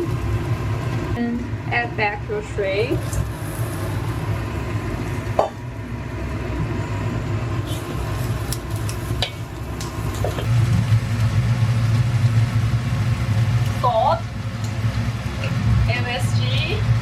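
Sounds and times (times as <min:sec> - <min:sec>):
cooker drone: 0:00.0 - 0:17.0
spatula scraping a wok: 0:07.6 - 0:08.5.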